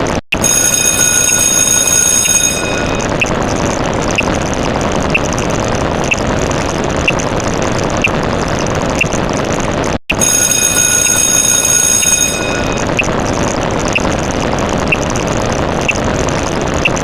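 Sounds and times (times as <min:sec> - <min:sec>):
high steady tones: 0:00.4 - 0:03.4, 0:10.1 - 0:13.2.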